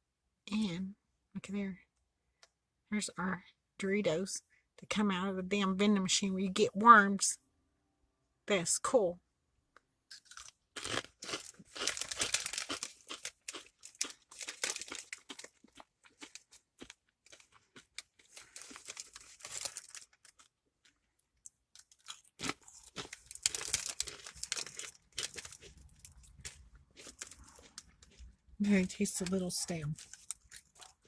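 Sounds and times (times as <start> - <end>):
chips crunched and chewed: 10.1 - 31.0
chip bag crinkling: 10.2 - 21.0, 21.7 - 31.0.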